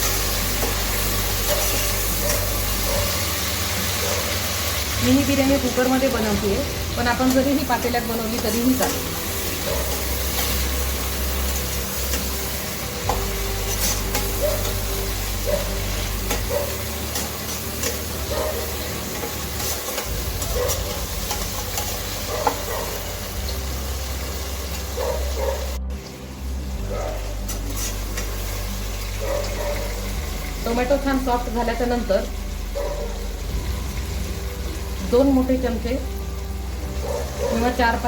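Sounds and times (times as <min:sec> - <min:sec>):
vegetables sizzling in oil: 0:00.0 - 0:38.0
spoon scraping and stirring: 0:01.4 - 0:03.3, 0:11.5 - 0:23.0, 0:27.4 - 0:28.3.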